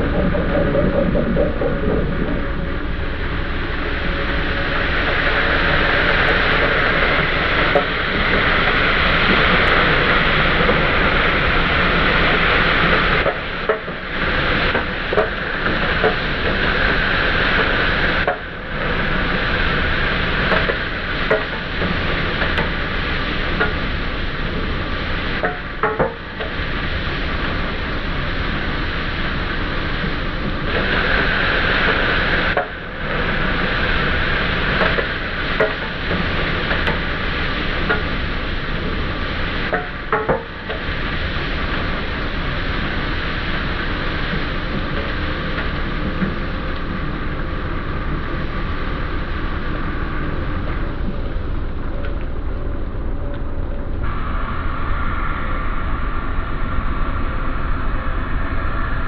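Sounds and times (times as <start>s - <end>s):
drilling rig and compressor running: 0.0s - 59.0s.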